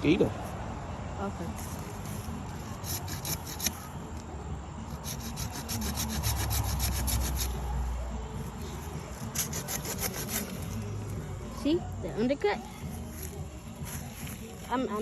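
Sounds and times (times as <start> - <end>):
hand saw cutting wood: 2.5 - 3.8, 4.9 - 7.7, 9.1 - 10.8.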